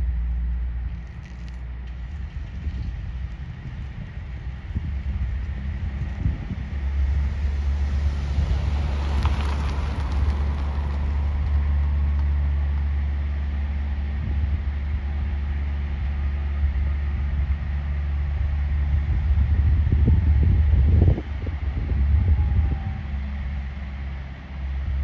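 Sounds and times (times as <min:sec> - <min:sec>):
low wind rumble on microphone: 0:00.0 - 0:25.0
propeller aircraft engine passing: 0:02.3 - 0:15.0.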